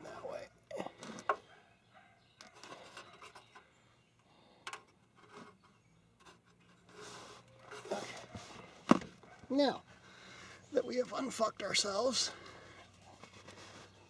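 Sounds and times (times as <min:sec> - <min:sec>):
hands rubbing and scraping engine parts: 0:04.6 - 0:14.0.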